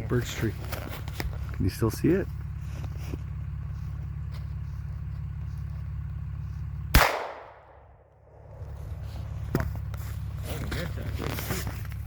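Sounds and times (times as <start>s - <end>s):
truck engine idling: 0.0s - 12.0s
loud shotgun shot: 6.9s - 7.8s.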